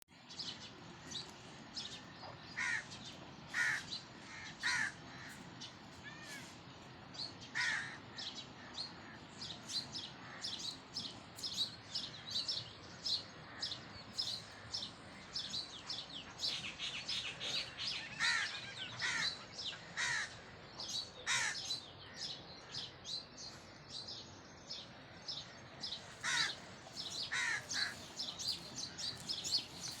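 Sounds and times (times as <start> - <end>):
harsh caw-like bird calls: 2.5 - 6.6, 7.4 - 10.8, 16.4 - 22.9, 25.4 - 30.0.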